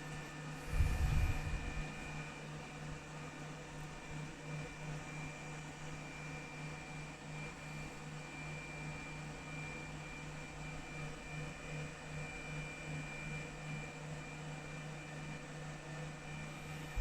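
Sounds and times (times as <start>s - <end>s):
machine humming: 0.6s - 2.2s.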